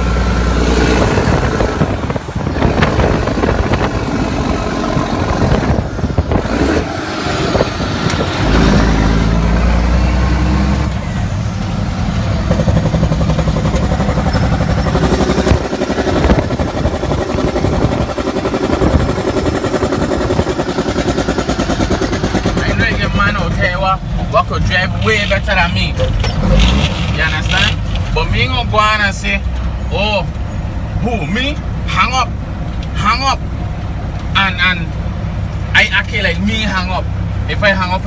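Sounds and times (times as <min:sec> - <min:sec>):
truck diesel engine driving: 0:00.0 - 0:38.0.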